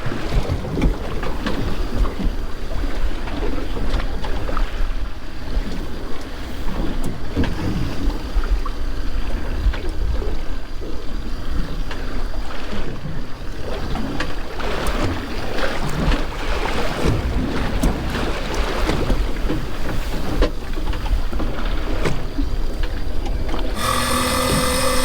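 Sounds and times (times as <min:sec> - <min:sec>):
water sloshing against boat: 0:00.0 - 0:25.0.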